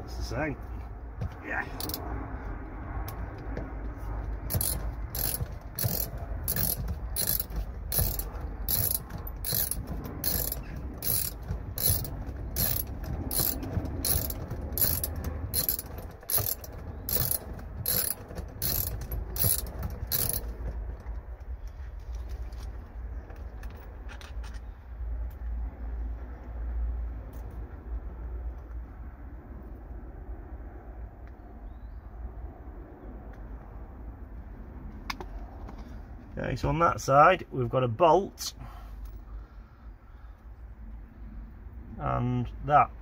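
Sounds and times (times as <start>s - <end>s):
ratchet wrench clicking: 1.8s - 2.0s, 4.5s - 20.6s.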